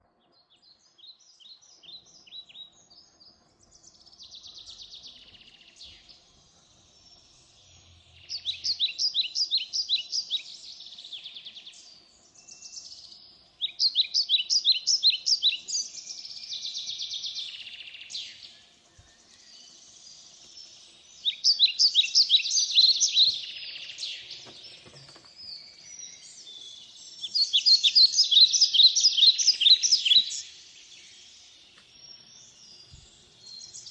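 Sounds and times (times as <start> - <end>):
songbird singing: 0.0 - 33.9.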